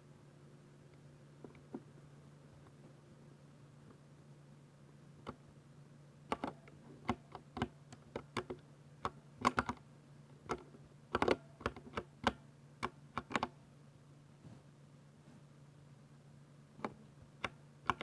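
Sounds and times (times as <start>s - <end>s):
mechanical keyboard keystroke clicks: 6.3s - 9.8s, 10.5s - 13.5s, 16.8s - 18.0s.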